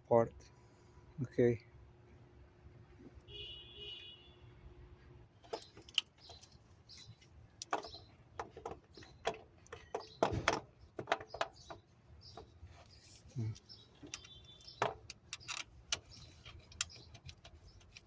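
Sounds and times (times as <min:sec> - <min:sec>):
hand tools and metal parts clicking: 0:05.4 - 0:18.0.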